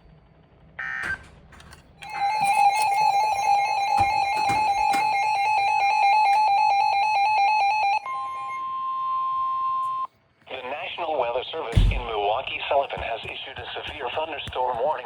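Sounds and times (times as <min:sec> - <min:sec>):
pulsing electronic alarm tone: 0:02.0 - 0:10.1.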